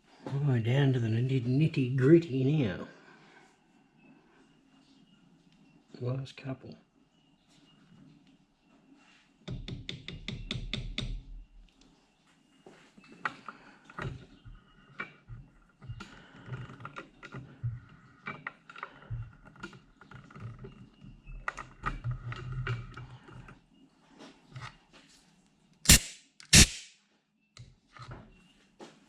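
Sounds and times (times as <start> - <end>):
sharp loud metal strikes: 25.9 - 26.9.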